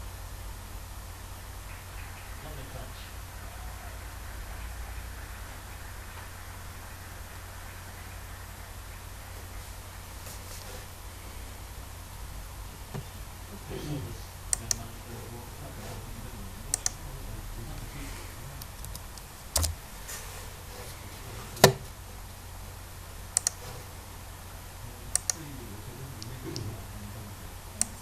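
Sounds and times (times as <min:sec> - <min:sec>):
low steady hum: 0:00.0 - 0:28.0
sharp clicks: 0:14.5 - 0:14.9, 0:16.7 - 0:17.2, 0:18.6 - 0:19.8, 0:23.3 - 0:23.7, 0:25.1 - 0:25.6.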